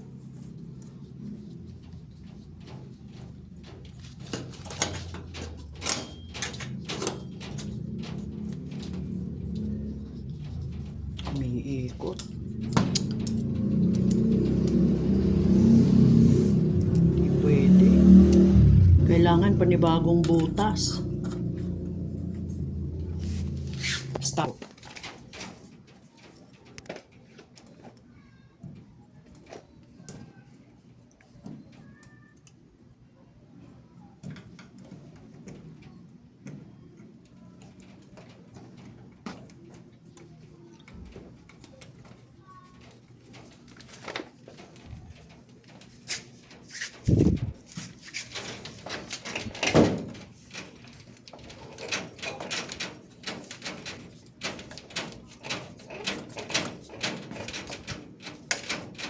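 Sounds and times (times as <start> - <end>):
door hardware clicks and knocks: 3.8 - 9.0, 12.2 - 14.4, 48.4 - 59.0.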